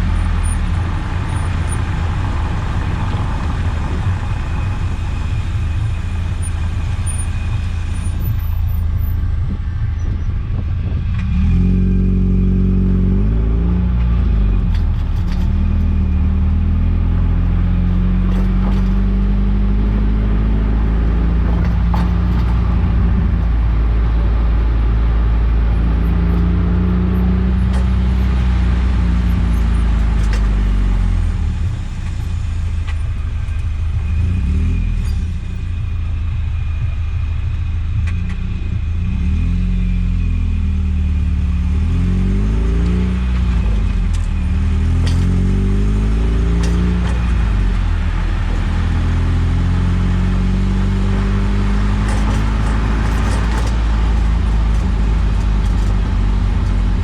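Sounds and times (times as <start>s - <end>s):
car engine accelerating: 0.0s - 57.0s.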